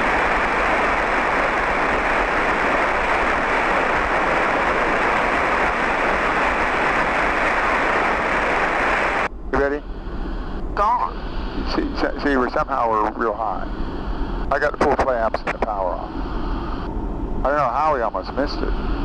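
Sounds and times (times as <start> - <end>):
airflow: 0.0 - 12.2
aircraft engine and propeller drone: 0.0 - 19.0.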